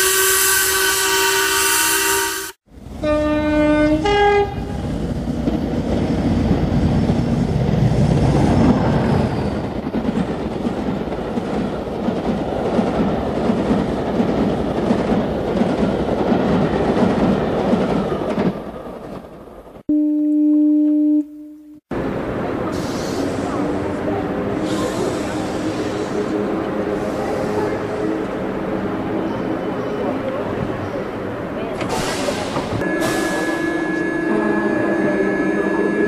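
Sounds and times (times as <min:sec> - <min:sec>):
train horn blasts: 0:00.0 - 0:04.8, 0:19.9 - 0:21.7, 0:32.8 - 0:36.0
train rumbling on rails: 0:02.1 - 0:19.9, 0:21.9 - 0:36.0.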